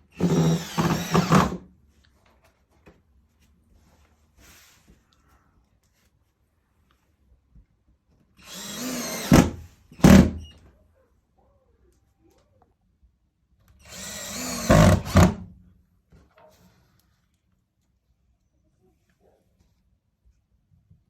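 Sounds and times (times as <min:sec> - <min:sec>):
power drill running: 0:00.1 - 0:01.6, 0:08.4 - 0:10.4, 0:13.8 - 0:15.4.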